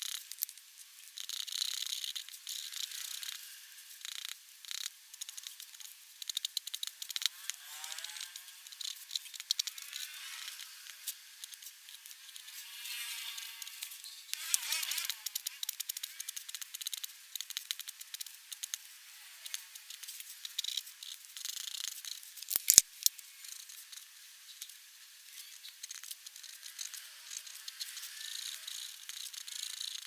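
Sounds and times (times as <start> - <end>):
sharp clicks: 22.4 - 23.1.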